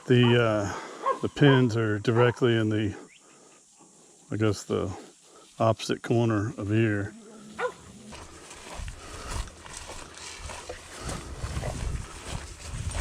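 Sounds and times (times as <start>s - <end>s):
cows lowing: 6.8s - 13.0s.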